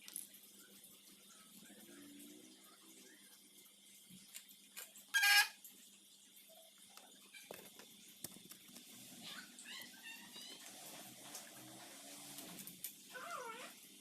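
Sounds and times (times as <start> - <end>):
high-pitched animal calls: 5.1 - 5.6.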